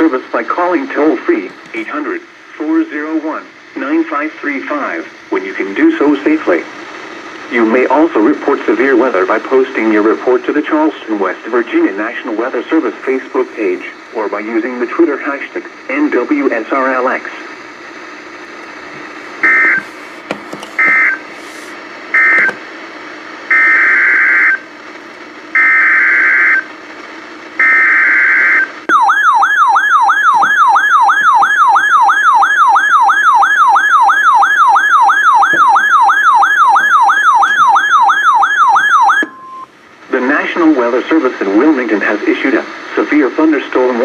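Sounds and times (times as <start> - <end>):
warbling alarm tone: 19.4 - 19.9, 20.8 - 21.2, 22.1 - 22.6, 27.6 - 39.7.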